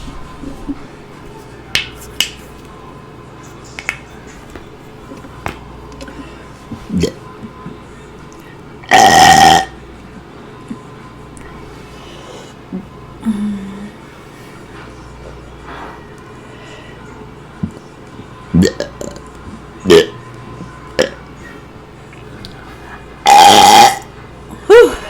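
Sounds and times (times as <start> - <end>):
woman burping loudly: 8.9 - 9.8, 18.6 - 19.2, 19.9 - 20.2, 21.0 - 21.2, 23.2 - 24.1.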